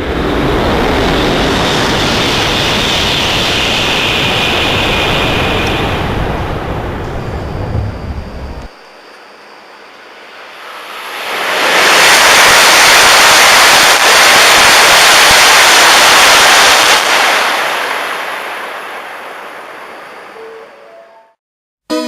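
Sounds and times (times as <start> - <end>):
train passing at high speed: 0.0 - 21.0.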